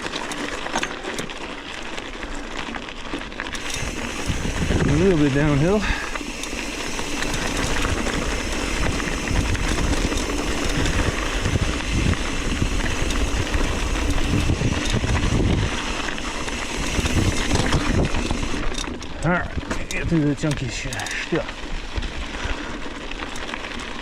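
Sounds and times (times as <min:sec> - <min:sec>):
bike rattling over stones: 0:00.0 - 0:24.0
tyres crunching on rocky trail: 0:00.0 - 0:24.0
wind on microphone: 0:03.8 - 0:05.6, 0:07.2 - 0:18.6.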